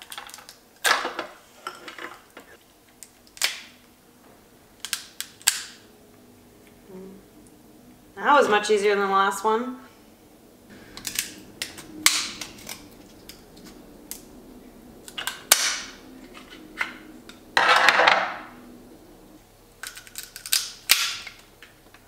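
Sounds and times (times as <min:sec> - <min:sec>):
lobster shell cracking: 0:02.8 - 0:03.8, 0:04.8 - 0:05.8, 0:10.9 - 0:14.3, 0:19.8 - 0:21.7.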